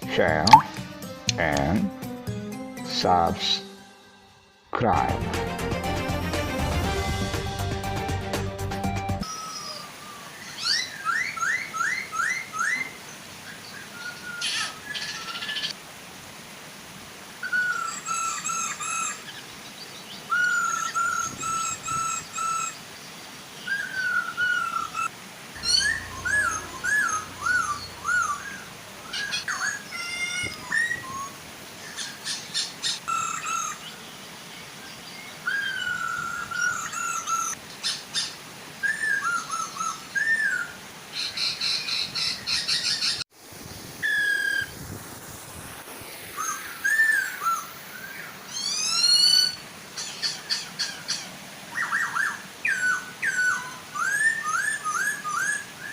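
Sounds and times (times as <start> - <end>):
birds whistling song: 9.2 - 15.7, 19.9 - 22.8, 23.6 - 34.0, 34.8 - 43.2, 46.4 - 55.9
waterfall rushing: 24.7 - 32.2
birds chattering: 25.6 - 31.0.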